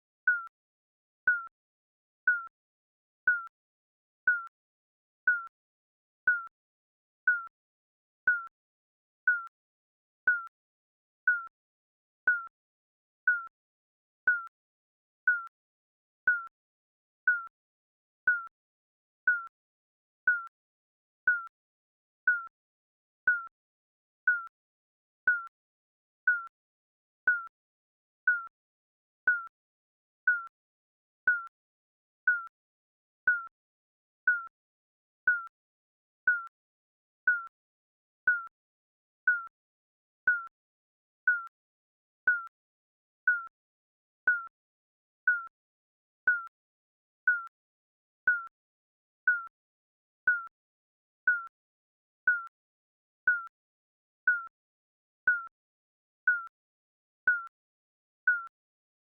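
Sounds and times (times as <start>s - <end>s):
timer beeping: 0.3s - 0.5s, 1.3s - 1.5s, 2.3s - 2.5s, 3.3s - 3.5s, 4.3s - 4.5s, 5.3s - 5.5s, 6.3s - 6.5s, 9.3s - 9.5s, 10.3s - 10.5s, 12.3s - 12.5s, 14.3s - 14.5s, 17.3s - 17.5s, 18.3s - 18.5s, 19.3s - 19.5s, 20.3s - 20.5s, 22.3s - 22.5s, 24.3s - 24.5s, 27.3s - 27.5s, 28.3s - 28.5s, 29.3s - 29.5s, 32.3s - 32.5s, 35.3s - 35.5s, 36.3s - 36.5s, 37.3s - 37.5s, 38.3s - 38.5s, 39.3s - 39.5s, 42.3s - 42.5s, 46.3s - 46.5s, 51.3s - 51.5s, 54.3s - 54.5s, 55.3s - 55.5s, 56.3s - 56.5s.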